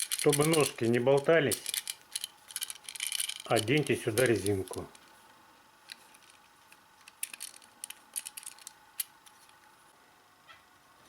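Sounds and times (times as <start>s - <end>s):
wall socket parts clicking and rattling: 0.0s - 5.1s, 7.0s - 9.6s.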